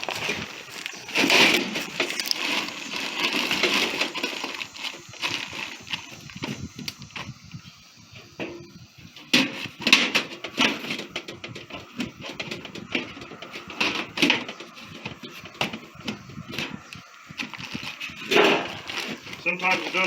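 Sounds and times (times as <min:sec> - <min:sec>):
lid scraping: 0:00.0 - 0:05.7.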